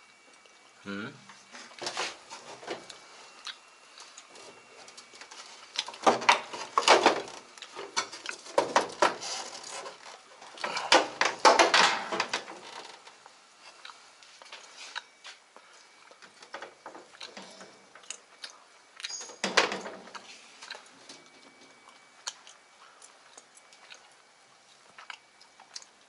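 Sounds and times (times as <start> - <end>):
tools and parts clattering: 4.4 - 13.1, 19.1 - 20.2.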